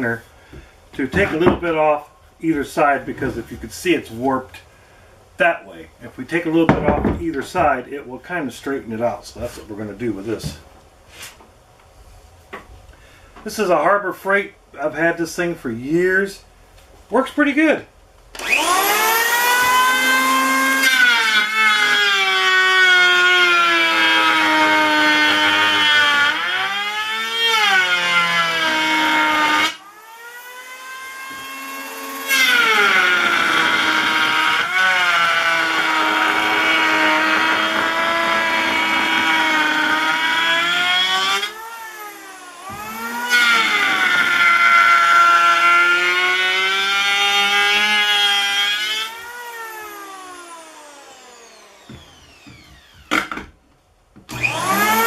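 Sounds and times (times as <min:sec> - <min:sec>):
electric planer cutting wood: 0:18.4 - 0:53.5, 0:54.3 - 0:55.0.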